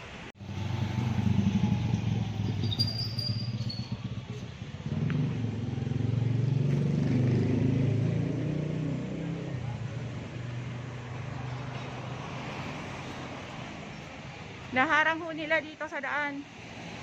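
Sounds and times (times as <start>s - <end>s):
vehicle engine idling: 0.4s - 6.1s.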